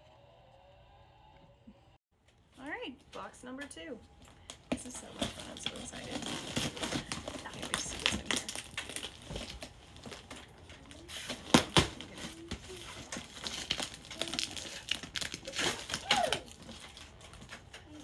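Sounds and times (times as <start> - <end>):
packing wrapping crinkling: 4.2 - 18.0.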